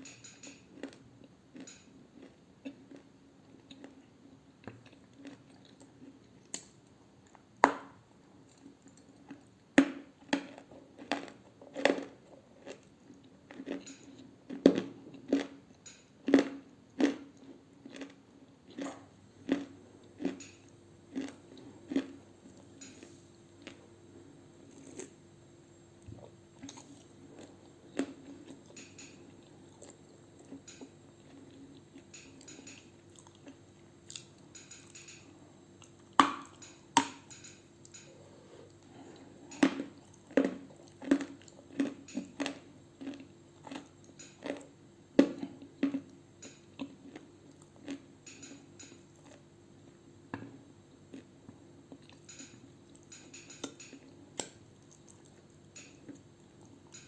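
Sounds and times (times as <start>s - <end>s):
crunchy chewing close up: 0.8s - 6.7s, 10.3s - 15.6s, 16.2s - 23.9s, 24.5s - 25.2s, 26.0s - 35.0s, 37.9s - 49.5s, 51.0s - 52.3s.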